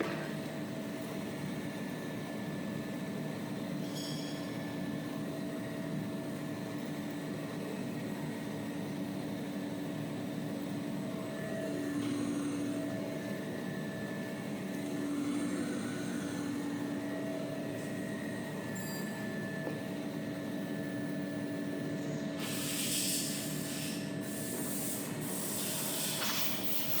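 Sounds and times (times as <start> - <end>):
cutting machine humming: 11.2 - 21.3.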